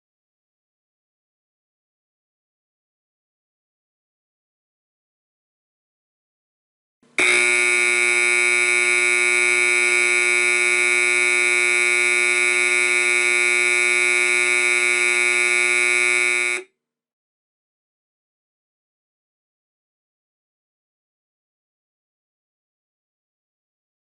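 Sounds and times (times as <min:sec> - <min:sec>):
fire alarm horn steady tone: 0:07.2 - 0:16.7.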